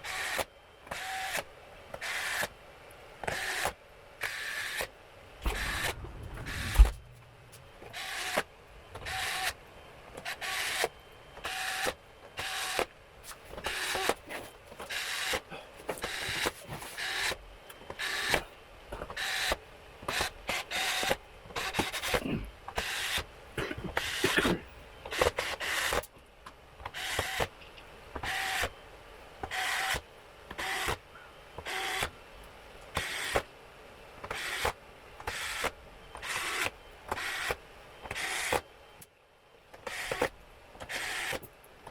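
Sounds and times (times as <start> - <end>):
small mechanism whirring: 3.2 - 9.6, 10.2 - 12.9, 34.2 - 38.6, 39.8 - 41.5
faint steady tone: 31.1 - 31.6.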